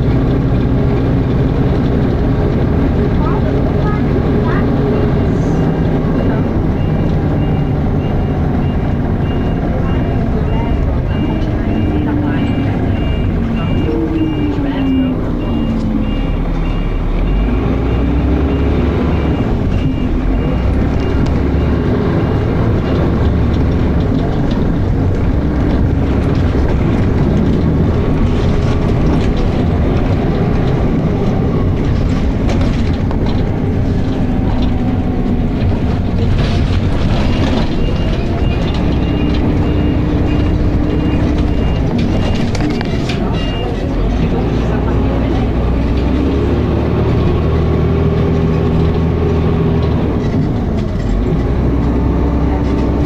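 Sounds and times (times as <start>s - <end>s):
bus engine revving: 0.0s - 53.0s.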